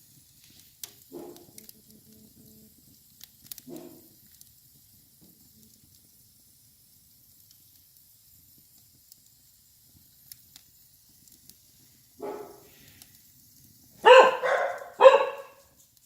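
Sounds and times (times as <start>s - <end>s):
wood fire crackling: 0.0s - 16.0s
dog barking: 1.1s - 1.5s, 3.7s - 4.1s, 12.2s - 12.7s, 14.0s - 15.7s.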